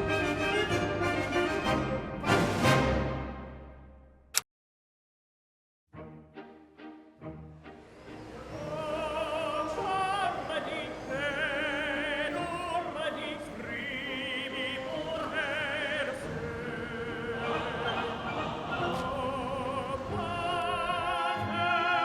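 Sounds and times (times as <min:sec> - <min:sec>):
orchestral accompaniment: 0:00.0 - 0:04.0, 0:06.0 - 0:22.0
operatic singing: 0:07.8 - 0:22.0.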